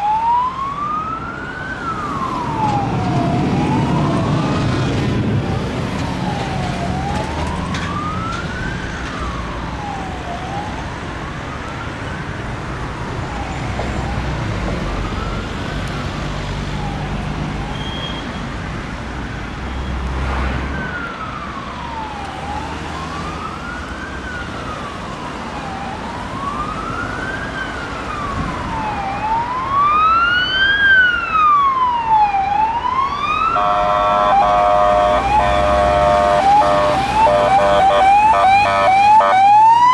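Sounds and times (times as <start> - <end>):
road traffic: 0.0 - 39.9
electronic siren wailing: 28.2 - 39.9
short steady siren tones: 32.2 - 39.9.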